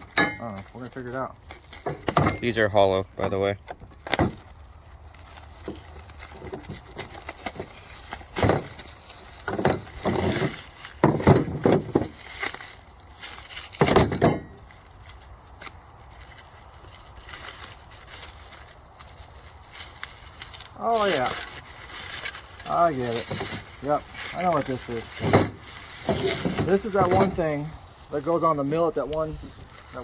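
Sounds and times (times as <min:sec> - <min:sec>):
metal parts knocking and scraping: 0:00.0 - 0:00.6, 0:01.7 - 0:02.6, 0:09.4 - 0:12.2, 0:13.7 - 0:14.7, 0:21.0 - 0:27.6.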